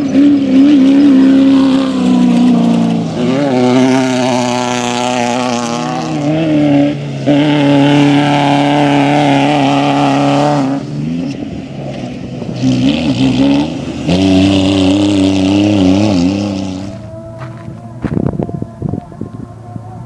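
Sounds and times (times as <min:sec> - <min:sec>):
race vehicle engine running hard: 0:00.0 - 0:20.0.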